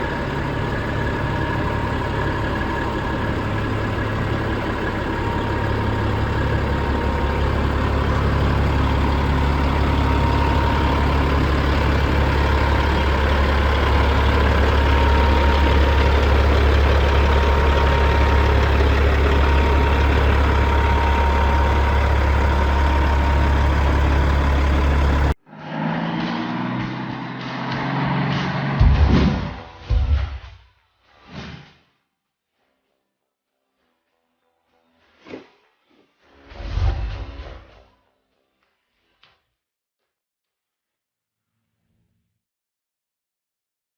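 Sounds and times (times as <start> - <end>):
diesel engine idling: 0.0 - 25.4.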